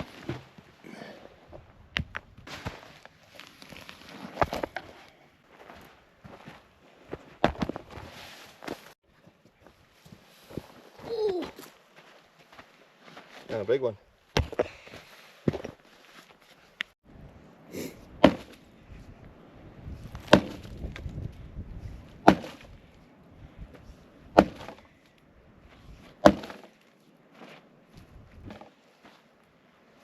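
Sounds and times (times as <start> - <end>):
tent stake hammered into ground: 18.2 - 18.6, 20.2 - 20.7, 22.2 - 22.7, 24.4 - 24.8, 26.2 - 26.7.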